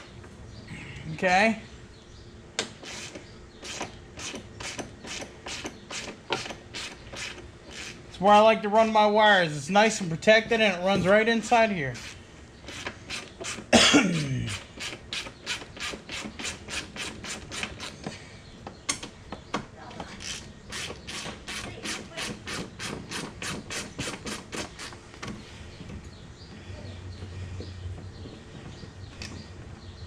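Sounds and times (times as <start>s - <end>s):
hand tool rasping strokes: 2.8s - 8.2s, 11.9s - 13.7s, 14.4s - 18.0s, 20.2s - 25.0s.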